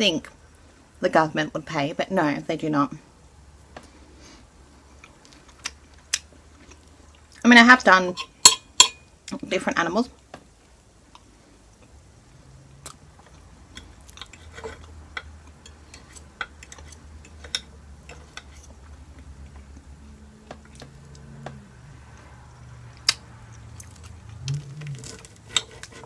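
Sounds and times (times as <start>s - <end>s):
faint low hum: 0.0s - 26.0s
quiet chewing: 4.8s - 7.4s, 12.8s - 26.0s
sharp clink: 8.2s - 9.1s.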